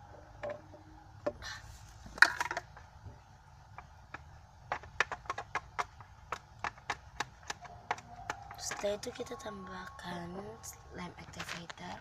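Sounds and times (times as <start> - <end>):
utensils clicking and tapping: 3.7 - 9.5.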